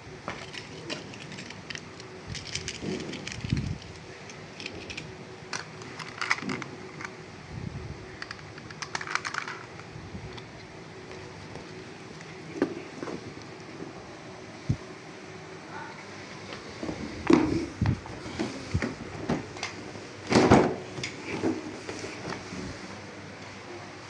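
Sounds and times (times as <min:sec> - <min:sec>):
plastic toy parts clicking and rattling: 0:00.4 - 0:07.2, 0:08.2 - 0:10.4.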